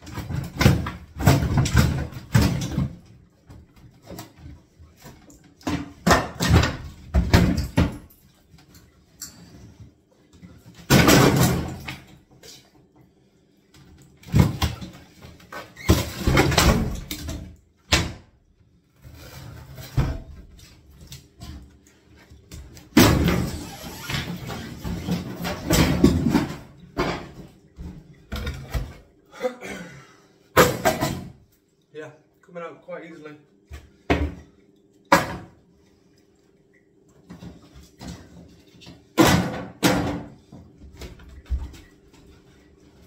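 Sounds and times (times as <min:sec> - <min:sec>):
wooden units banging and knocking: 0:22.9 - 0:29.0.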